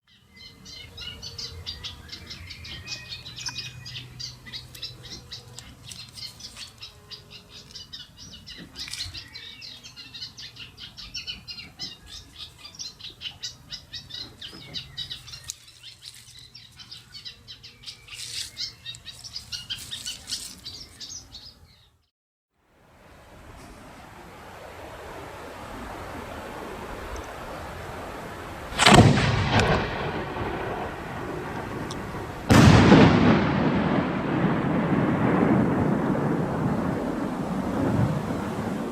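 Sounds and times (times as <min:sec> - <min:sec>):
birds twittering and chirping: 0:00.1 - 0:22.1.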